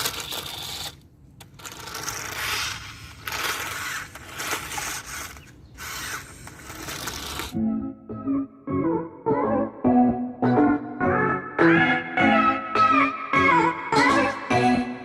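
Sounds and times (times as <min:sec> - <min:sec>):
small electric motor whirring: 0:00.0 - 0:07.6.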